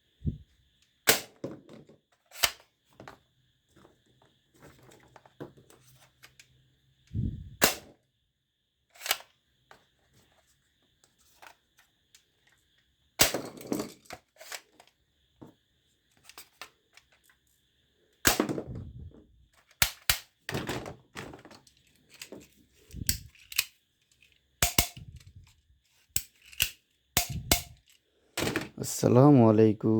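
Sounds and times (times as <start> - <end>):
toy guns snapping and clacking: 2.3 - 2.7, 9.0 - 9.3, 19.6 - 20.4, 21.6 - 28.6.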